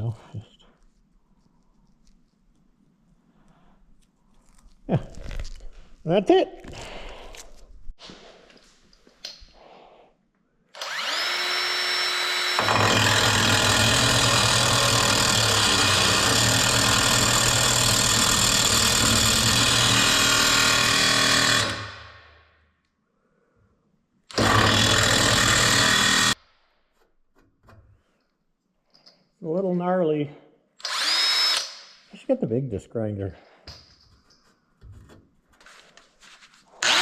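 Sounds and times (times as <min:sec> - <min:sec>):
power grinder grinding fibreglass: 0:10.8 - 0:21.9.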